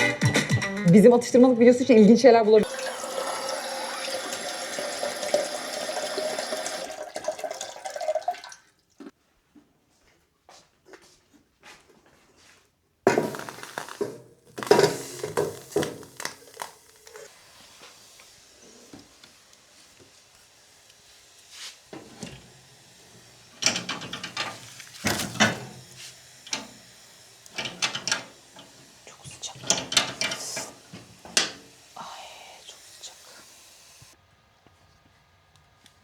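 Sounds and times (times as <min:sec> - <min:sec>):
hard objects knocking and clattering: 0:13.1 - 0:17.3.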